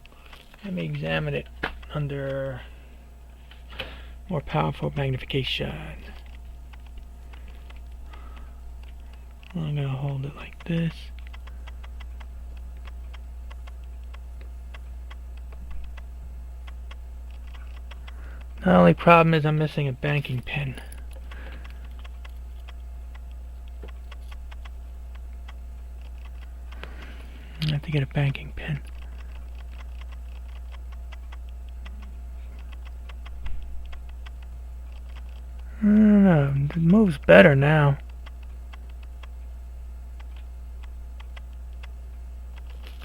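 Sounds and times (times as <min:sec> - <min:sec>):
low electrical hum: 0:00.0 - 0:43.0
pocket watch ticking fast: 0:28.8 - 0:35.7.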